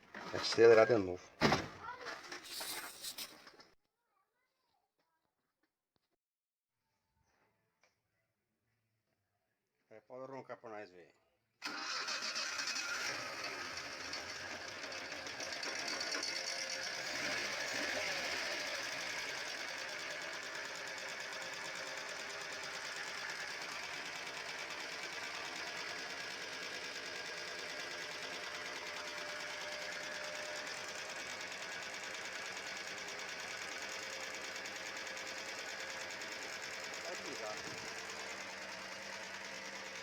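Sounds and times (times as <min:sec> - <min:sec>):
engine ticking clatter: 0:12.4 - 0:40.0.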